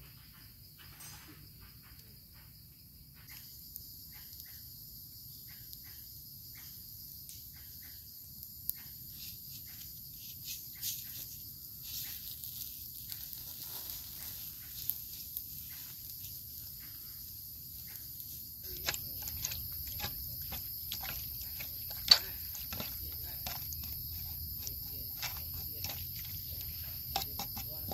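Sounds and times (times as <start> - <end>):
high-pitched insect chorus: 0.0 - 27.9
light clicks and scrapes: 18.6 - 27.9.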